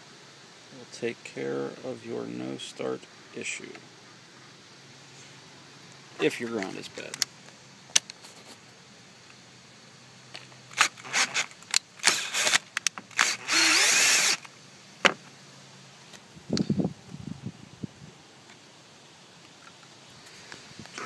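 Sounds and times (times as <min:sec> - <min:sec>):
power tool running: 0:10.8 - 0:14.5.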